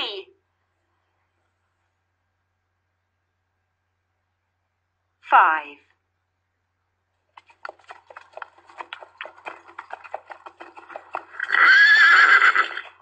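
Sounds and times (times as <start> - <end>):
horse hooves clip-clopping: 7.3 - 13.0
horse whinny: 9.8 - 13.0.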